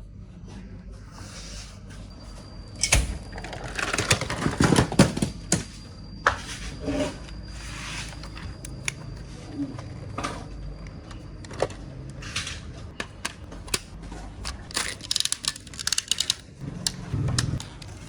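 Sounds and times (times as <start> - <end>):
plastic toy parts clicking and rattling: 13.0 - 18.0.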